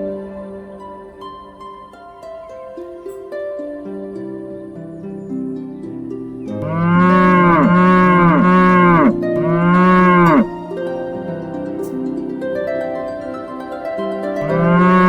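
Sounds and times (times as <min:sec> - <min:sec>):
soft harp-like music: 0:00.0 - 0:15.0
cow mooing: 0:06.6 - 0:10.5, 0:14.5 - 0:15.0.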